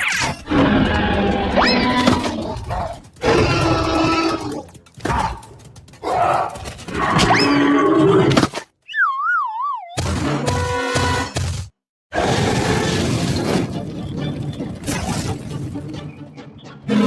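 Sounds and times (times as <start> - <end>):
music: 12.8 - 17.0.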